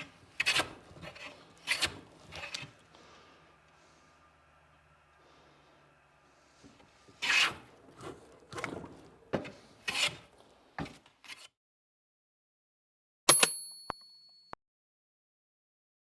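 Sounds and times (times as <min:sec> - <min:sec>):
rasping scraping strokes: 0:00.0 - 0:04.4, 0:05.2 - 0:11.5.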